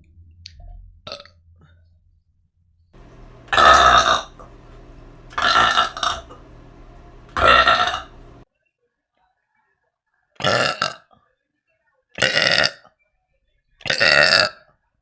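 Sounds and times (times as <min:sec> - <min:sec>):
person burping loudly: 0:03.0 - 0:06.6, 0:07.3 - 0:08.4, 0:10.4 - 0:11.1, 0:12.2 - 0:12.8, 0:13.8 - 0:14.7.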